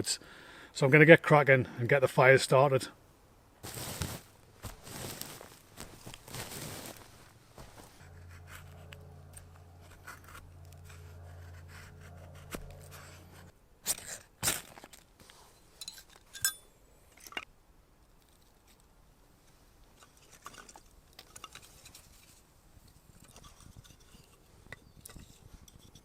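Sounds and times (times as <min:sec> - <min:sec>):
steady low hum: 0:03.4 - 0:13.8
metallic clink: 0:15.7 - 0:17.4.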